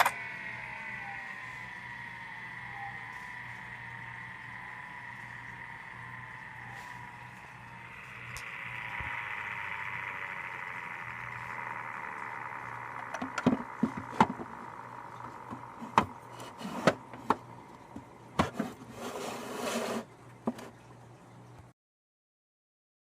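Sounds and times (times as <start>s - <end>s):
computer fan and drives whine: 0.0s - 21.7s
sharp clicks and knocks: 13.0s - 18.7s.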